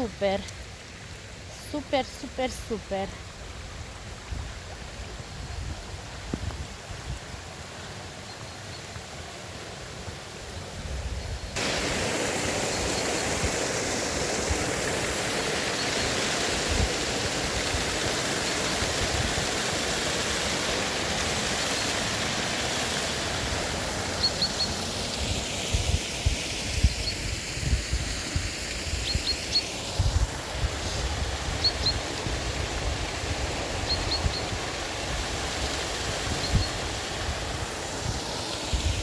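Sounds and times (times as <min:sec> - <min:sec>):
waterfall rushing: 0:11.6 - 0:39.0.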